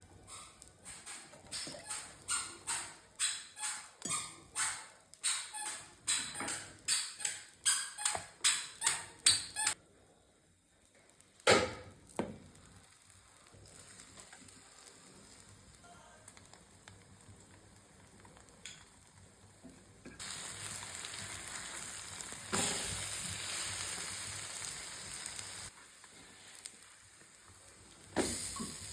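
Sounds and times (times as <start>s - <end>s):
omelette sizzling in a pan: 10.5s - 28.9s.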